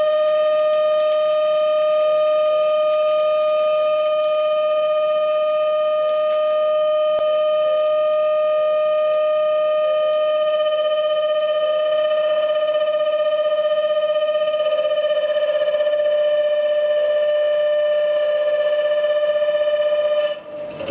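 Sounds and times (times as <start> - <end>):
lathe boring bar squealing: 18.2 - 20.9.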